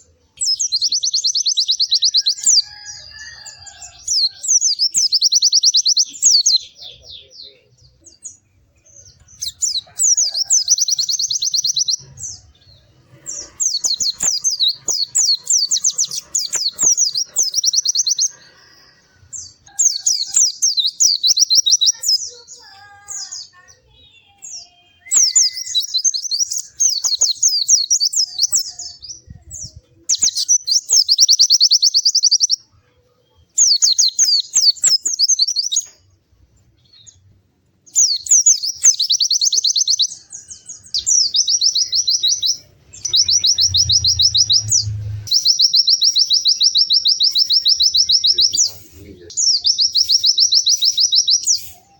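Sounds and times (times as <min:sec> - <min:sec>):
bird twittering song: 0:00.0 - 0:51.9.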